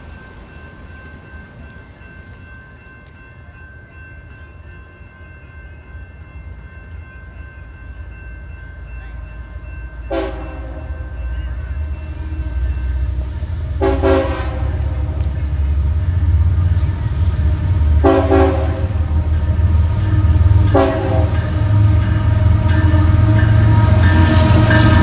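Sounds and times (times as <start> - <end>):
locomotive engine rumble: 8.7 - 25.0
locomotive horn blasts: 10.1 - 11.6, 12.2 - 15.6, 18.0 - 25.0.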